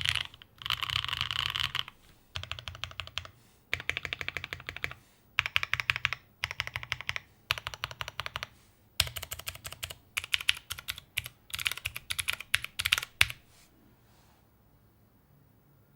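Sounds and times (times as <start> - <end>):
mechanical keyboard typing: 0.0 - 13.4.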